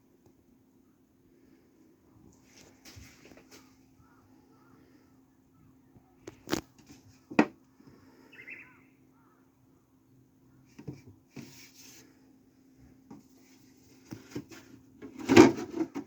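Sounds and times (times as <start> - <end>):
faint steady hum: 0.0 - 16.0
short chirp: 8.3 - 8.9.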